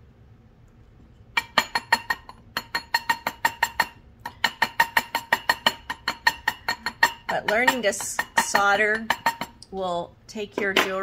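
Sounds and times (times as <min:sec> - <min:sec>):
hammer tapping metal ring: 0:01.4 - 0:09.6.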